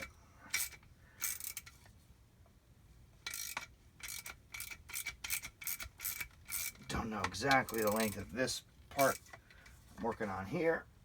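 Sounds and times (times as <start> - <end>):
socket ratchet clicking: 0.0 - 1.8, 3.3 - 8.3.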